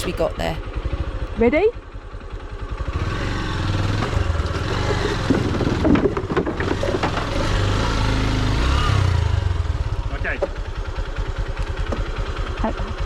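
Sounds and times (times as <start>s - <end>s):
small motorcycle engine revving: 2.7s - 10.2s.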